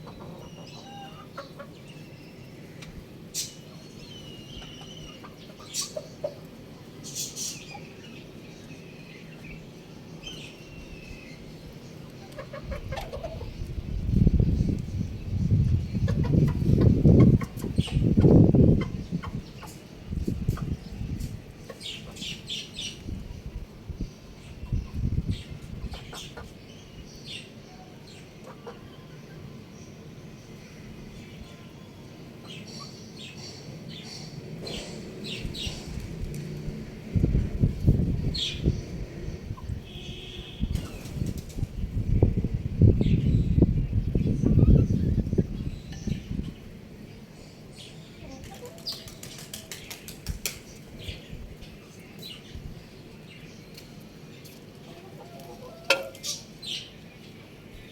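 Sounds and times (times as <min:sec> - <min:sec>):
young rooster chirping: 0:00.0 - 0:03.6, 0:04.2 - 0:06.5, 0:12.2 - 0:23.2, 0:24.5 - 0:26.6, 0:43.1 - 0:46.6, 0:54.9 - 0:57.0.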